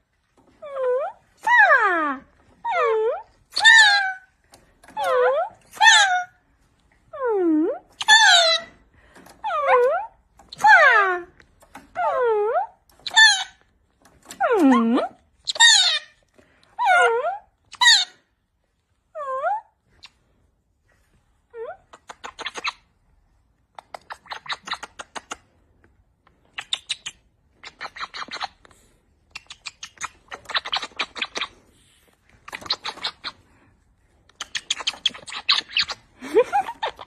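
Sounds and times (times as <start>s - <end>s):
parrot squeaky call: 2.6s - 4.3s, 5.0s - 6.4s, 8.0s - 8.7s, 13.0s - 13.6s, 15.5s - 16.2s, 16.8s - 18.2s
parrot making kiss sounds: 21.7s - 22.9s, 23.7s - 25.5s, 26.5s - 31.6s, 32.4s - 33.4s, 34.3s - 36.1s.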